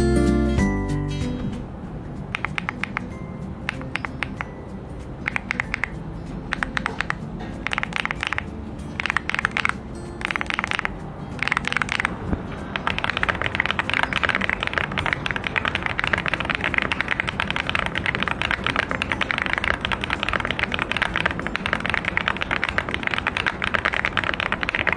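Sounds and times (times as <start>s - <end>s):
fast mechanical keyboard typing: 2.3s - 3.1s, 5.3s - 12.2s, 12.8s - 24.9s.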